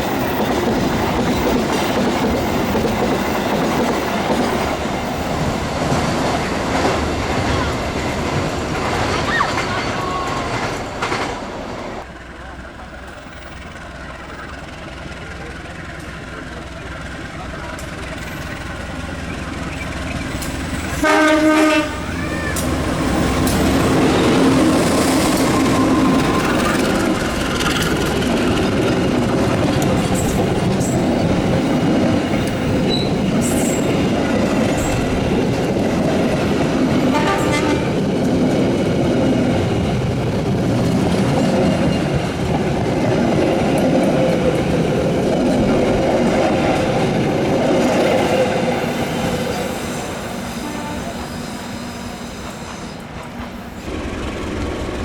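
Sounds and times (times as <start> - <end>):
train wheels rumbling on rails: 0.0 - 55.0
train horn blast: 20.8 - 24.7, 37.0 - 38.0, 50.0 - 52.9.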